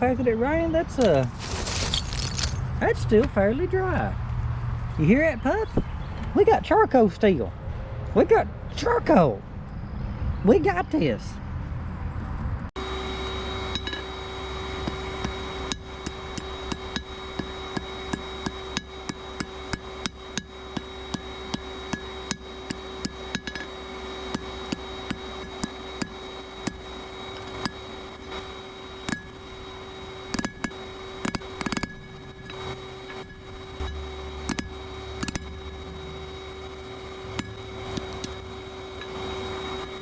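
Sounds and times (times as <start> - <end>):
steady hum and whine: 0.0 - 40.0
hammer striking steel on anvil: 17.8 - 23.7, 30.3 - 38.4.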